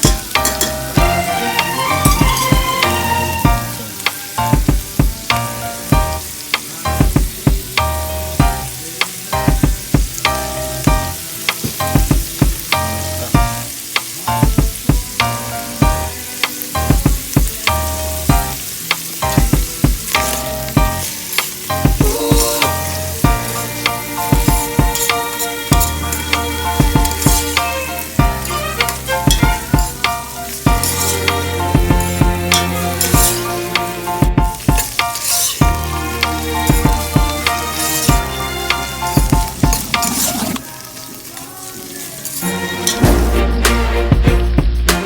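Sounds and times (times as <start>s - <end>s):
utensil scraping a pan: 0.0s - 4.4s, 20.1s - 43.2s
background music: 0.0s - 45.0s
food sizzling in a pan: 0.0s - 45.0s.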